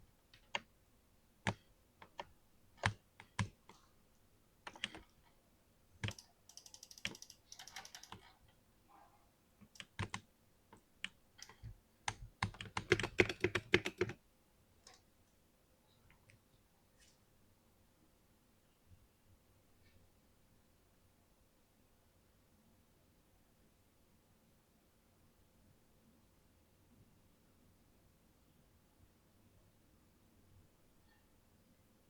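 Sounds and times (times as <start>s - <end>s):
computer keyboard typing: 0.3s - 0.7s, 1.4s - 3.9s, 4.6s - 5.2s, 6.0s - 8.4s, 9.6s - 10.2s, 11.0s - 14.2s.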